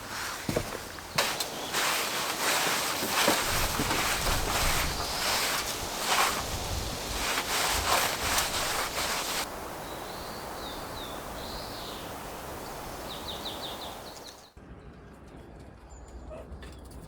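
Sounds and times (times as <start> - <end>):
rustling and crackling: 0.0 - 14.5
steady hiss: 0.0 - 14.5
bird calls and chirps: 1.0 - 14.6.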